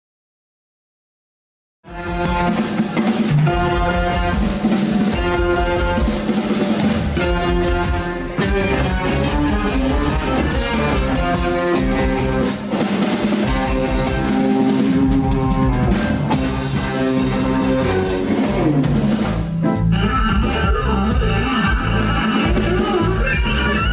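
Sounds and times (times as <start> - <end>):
rock band playing: 1.9 - 23.9.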